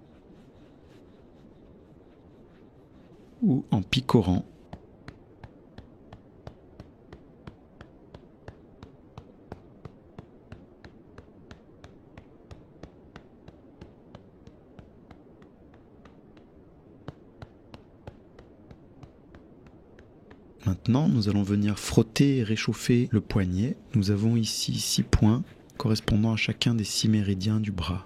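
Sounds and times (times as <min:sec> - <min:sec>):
fingertips tapping on arm: 0:00.0 - 0:21.2.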